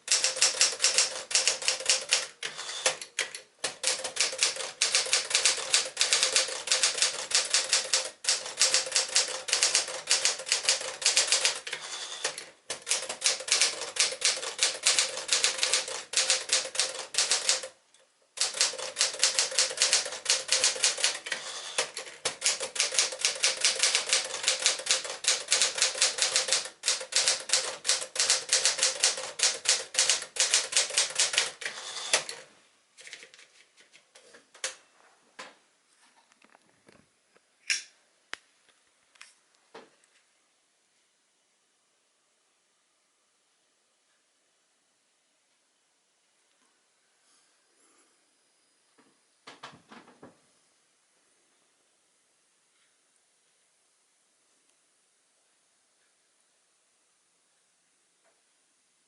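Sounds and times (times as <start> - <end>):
manual typewriter typing: 0.0 - 17.8, 18.4 - 32.4.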